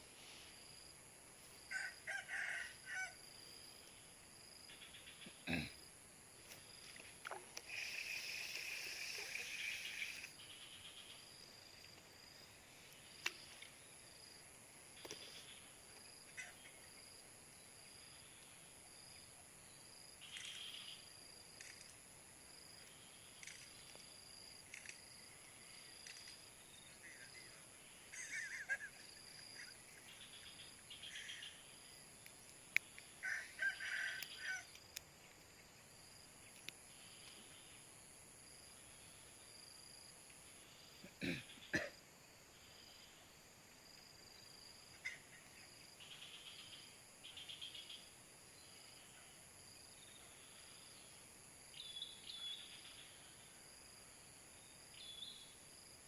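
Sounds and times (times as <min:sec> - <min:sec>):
faint bird calls: 0:16.3 - 0:16.9.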